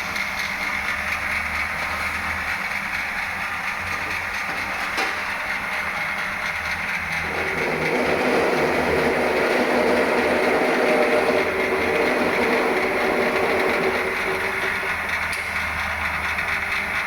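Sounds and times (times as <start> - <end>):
grainy whirr of rice husker: 0.0 - 17.0
electric motor hum: 7.1 - 15.3.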